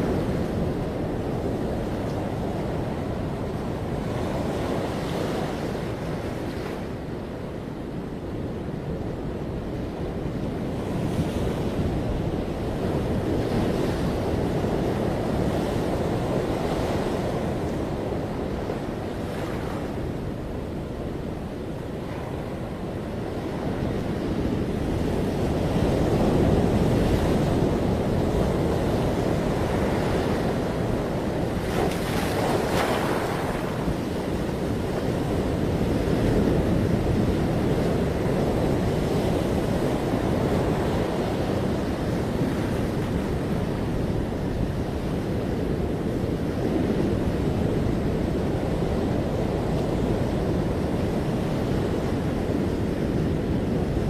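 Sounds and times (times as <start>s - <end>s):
ocean surf washing onto beach: 0.0s - 54.0s.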